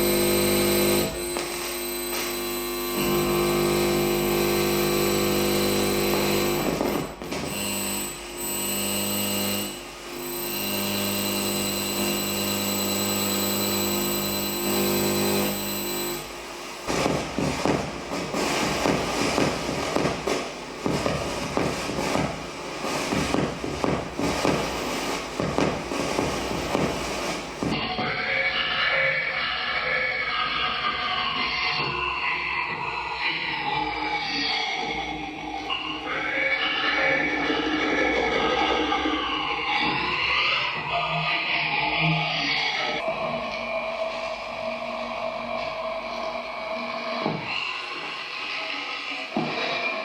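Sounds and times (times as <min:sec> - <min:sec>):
loud drone of held tones: 0:00.0 - 0:27.8.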